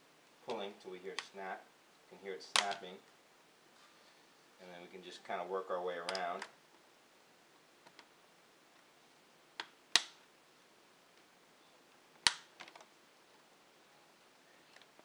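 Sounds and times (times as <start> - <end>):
plastic clips snapping loose: 2.6 - 2.8, 9.6 - 10.2, 12.2 - 12.9.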